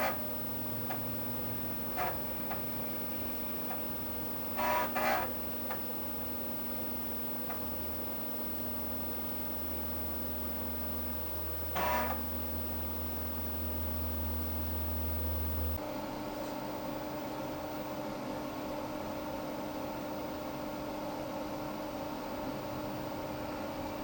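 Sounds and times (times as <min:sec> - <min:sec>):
desktop computer hum: 0:00.0 - 0:18.3
computer fan whirr: 0:00.0 - 0:24.0.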